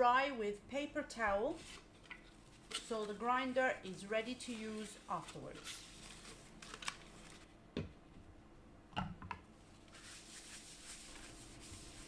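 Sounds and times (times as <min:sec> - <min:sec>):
paper towel scuffing: 0:09.9 - 0:12.0.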